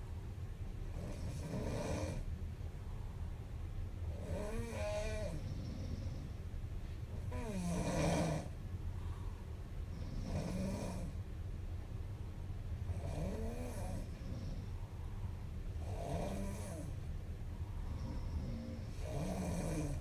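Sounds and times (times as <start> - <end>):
steady low hum: 0.0 - 20.0
woman snoring: 0.9 - 2.3, 4.1 - 6.2, 7.2 - 8.6, 10.0 - 11.2, 12.9 - 14.7, 15.8 - 17.0, 17.9 - 20.0.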